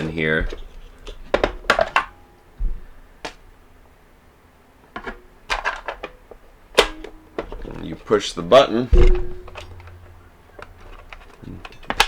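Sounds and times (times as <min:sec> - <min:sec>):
plastic clicks and rattles: 0:00.0 - 0:02.2, 0:04.9 - 0:08.0, 0:09.0 - 0:12.0
soft thump: 0:08.9 - 0:09.8.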